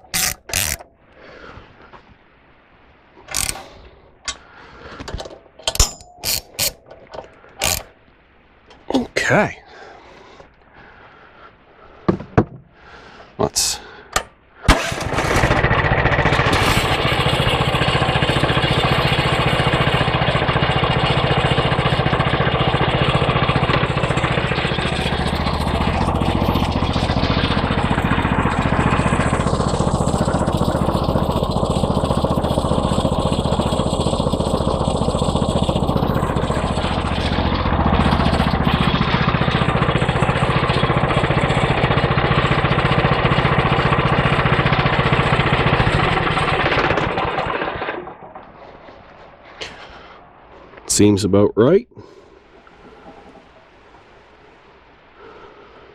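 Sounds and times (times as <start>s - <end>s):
gasoline engine running: 0.0s - 1.0s, 3.3s - 7.9s, 14.7s - 51.0s
sharp knocks: 12.1s - 12.7s.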